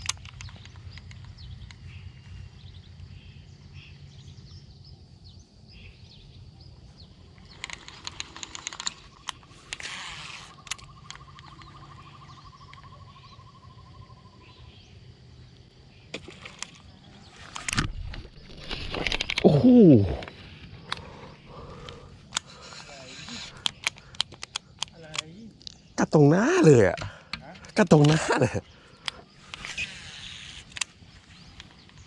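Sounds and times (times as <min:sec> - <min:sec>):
birds chirping faintly: 0:00.0 - 0:32.0
fishing reel whirring: 0:07.5 - 0:12.0, 0:29.5 - 0:30.8.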